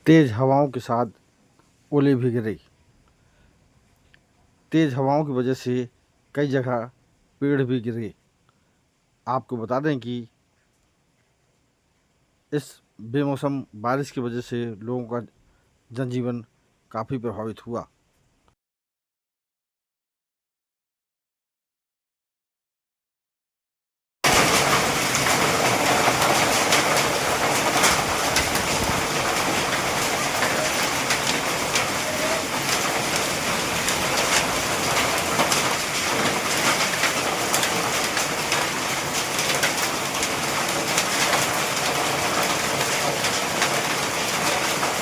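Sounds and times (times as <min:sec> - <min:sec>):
heavy rain on hard surfaces: 0:24.2 - 0:45.0.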